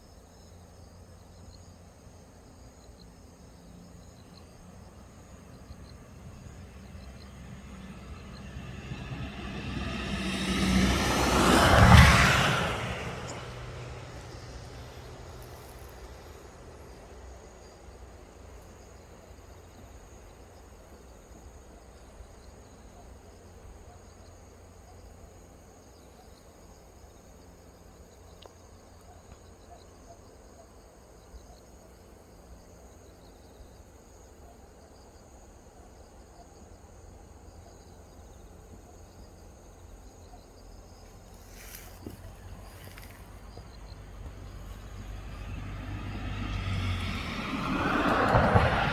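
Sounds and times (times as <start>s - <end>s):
insects chirring: 0.0s - 48.9s.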